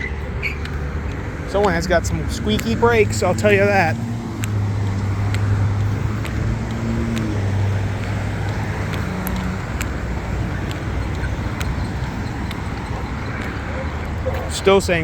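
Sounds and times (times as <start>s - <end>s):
car engines running: 0.0s - 15.0s
pedestrian signal ticking: 0.0s - 15.0s
tyres on road: 0.0s - 15.0s.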